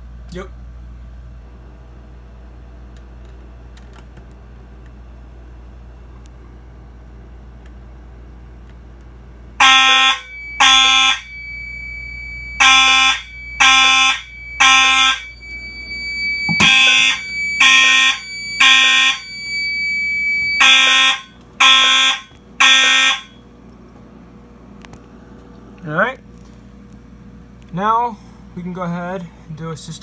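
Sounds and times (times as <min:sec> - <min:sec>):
steady high-pitched tone: 0:09.6 - 0:23.3
fire alarm horn blasts: 0:09.6 - 0:23.4.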